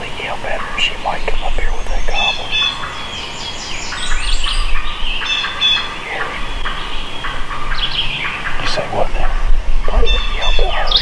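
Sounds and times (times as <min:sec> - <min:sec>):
turkey yelping: 0:03.9 - 0:11.0.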